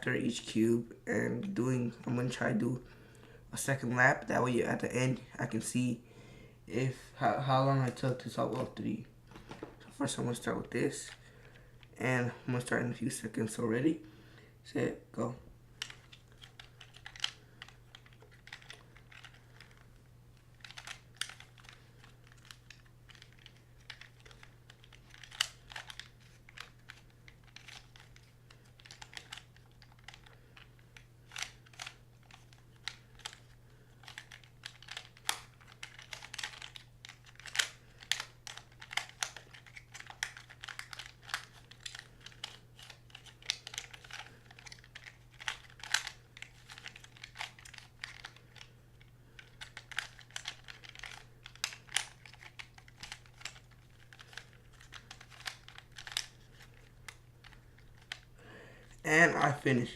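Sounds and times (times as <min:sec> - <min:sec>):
plastic puzzle clicking: 0:15.8 - 0:19.8, 0:20.6 - 0:48.7, 0:49.4 - 0:58.3.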